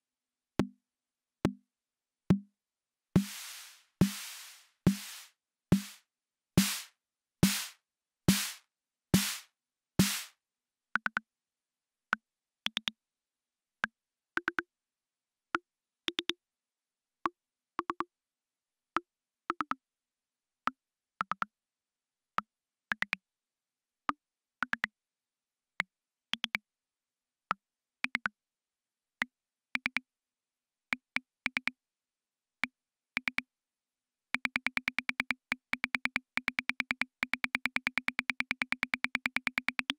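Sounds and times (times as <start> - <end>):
drum machine pattern: 3.2 - 6.0, 6.6 - 8.6, 9.2 - 9.4, 10.0 - 10.3.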